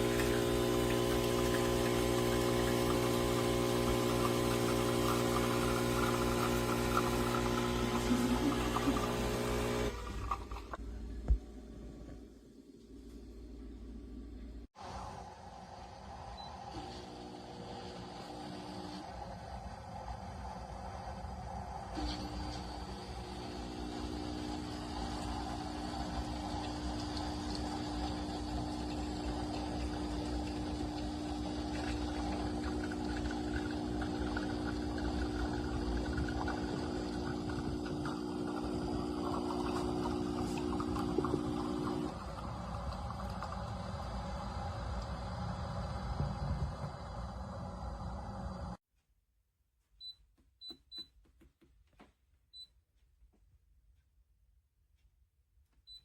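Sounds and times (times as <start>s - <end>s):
espresso machine pump buzzing: 0.0s - 10.8s, 16.8s - 19.1s, 22.0s - 46.2s.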